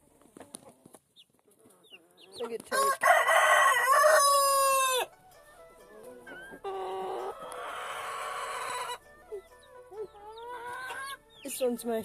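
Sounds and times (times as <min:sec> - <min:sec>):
chicks peeping: 0:00.0 - 0:02.9, 0:03.9 - 0:12.0.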